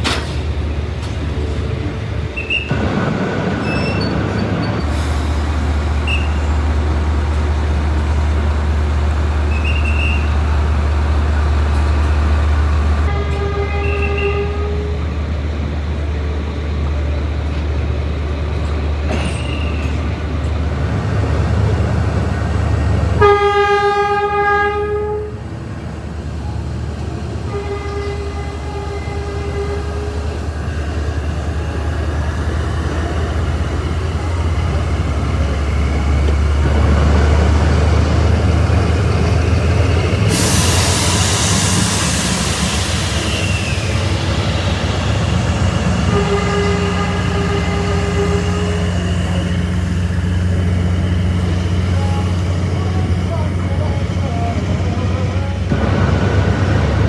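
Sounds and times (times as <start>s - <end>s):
diesel locomotive rumble: 0.0s - 57.0s
train horn blasts: 13.0s - 15.0s, 22.8s - 25.5s, 27.4s - 30.4s, 45.7s - 49.6s.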